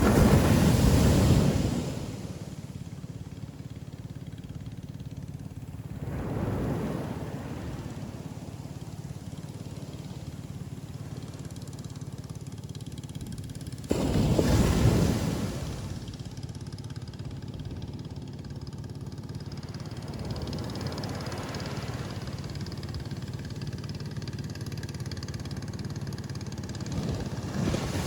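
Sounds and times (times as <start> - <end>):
wave breaking and rushing in: 0.0 - 3.0, 5.8 - 8.8, 13.9 - 16.3, 19.8 - 23.0, 26.8 - 28.0
low surf rumble: 0.0 - 28.0.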